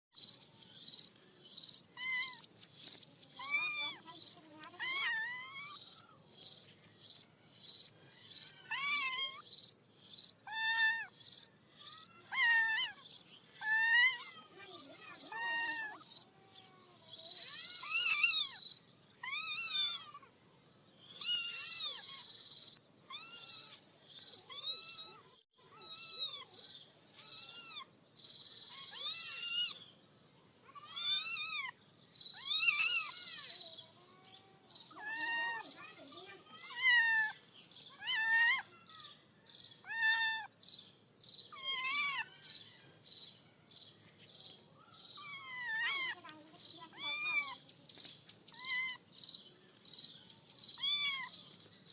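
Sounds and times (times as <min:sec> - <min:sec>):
cat meowing: 0:08.5 - 0:09.4, 0:46.9 - 0:47.6, 0:50.8 - 0:51.3.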